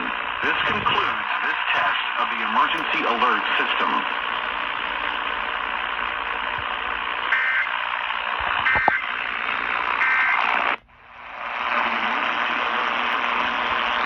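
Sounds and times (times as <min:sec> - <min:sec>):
radio static hiss: 0:00.0 - 0:14.0
two-tone data bursts: 0:07.3 - 0:09.2, 0:09.9 - 0:10.8.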